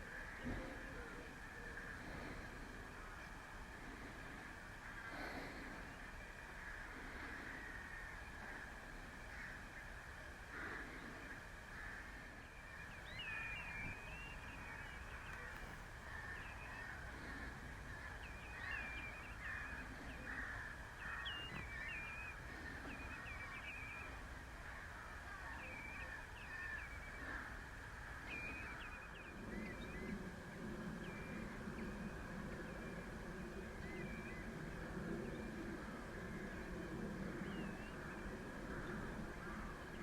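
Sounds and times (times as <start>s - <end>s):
harsh bird calls: 0.0s - 34.6s
distant bird calls: 0.0s - 40.0s.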